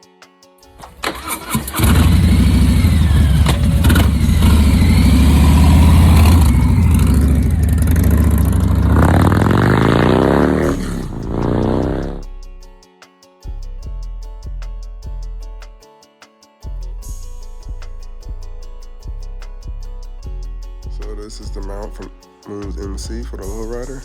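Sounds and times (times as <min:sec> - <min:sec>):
motorcycle starter cranking: 0:00.8 - 0:12.1
motorcycle engine running and revving: 0:01.0 - 0:12.3.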